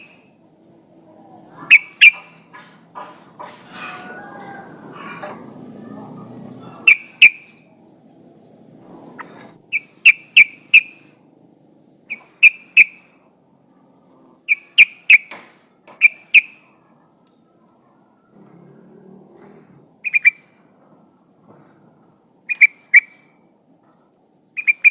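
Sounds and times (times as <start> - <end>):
bird whistled chirps: 6.8 - 8.9, 9.7 - 11.0, 14.5 - 16.6, 19.9 - 20.5, 22.2 - 23.2, 24.6 - 24.9.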